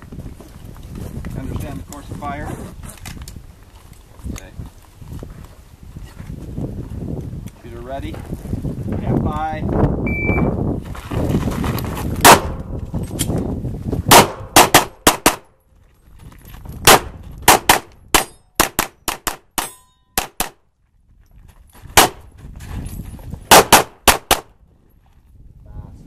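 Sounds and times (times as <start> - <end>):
pistol shots: 12.2 - 12.7, 14.1 - 15.5, 16.8 - 20.6, 22.0 - 22.2, 23.5 - 24.5.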